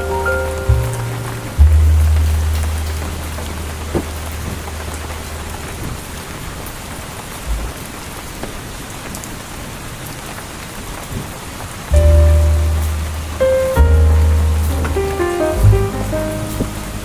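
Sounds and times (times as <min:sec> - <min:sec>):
low musical chord: 0:00.0 - 0:06.2, 0:11.9 - 0:17.0
rain pattering on window: 0:00.0 - 0:17.0.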